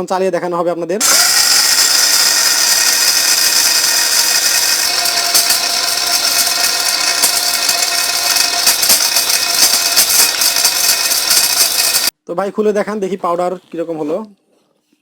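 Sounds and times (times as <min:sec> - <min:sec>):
hard pieces rattling inside grinder: 0:01.0 - 0:12.1
spice grinder whine: 0:01.0 - 0:12.1.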